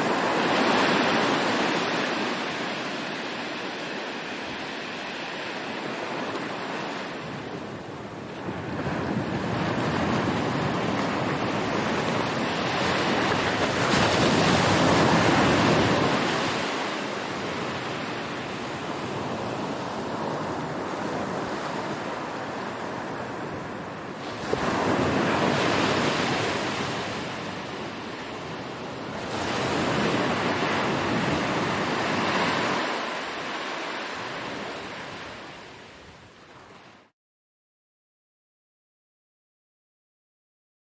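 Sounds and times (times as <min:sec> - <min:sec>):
sea waves washing in: 0:00.0 - 0:37.1.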